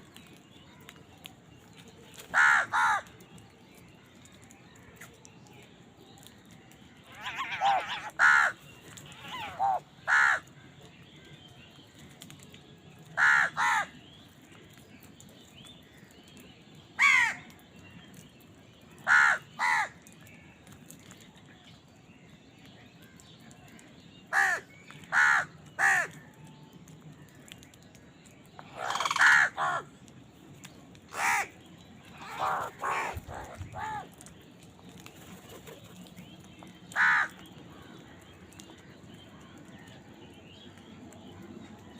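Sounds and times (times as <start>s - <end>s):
crows cawing: 2.3s - 3.1s, 7.1s - 10.5s, 13.2s - 14.0s, 17.0s - 17.4s, 19.0s - 20.0s, 24.3s - 26.2s, 28.7s - 29.9s, 31.1s - 31.6s, 32.2s - 34.1s, 36.9s - 38.0s.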